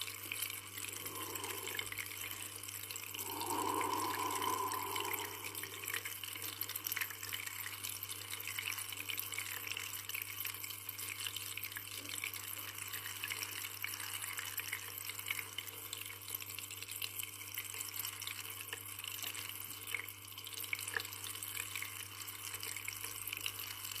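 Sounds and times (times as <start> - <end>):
low steady hum: 0.8 - 2.5, 3.2 - 6.2.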